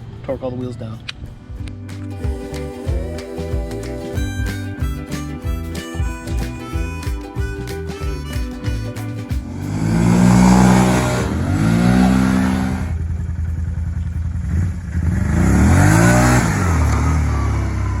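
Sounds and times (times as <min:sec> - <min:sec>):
atv engine revving: 0:09.4 - 0:18.0.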